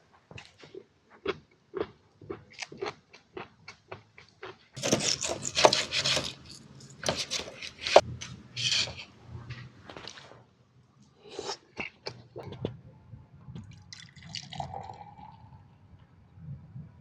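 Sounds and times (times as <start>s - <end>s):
soft wet food sounds: 11.0s - 12.8s.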